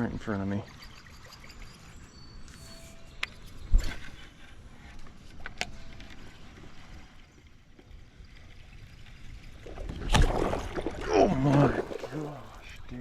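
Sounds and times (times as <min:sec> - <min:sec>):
paddle moving through water: 0:04.2 - 0:12.9.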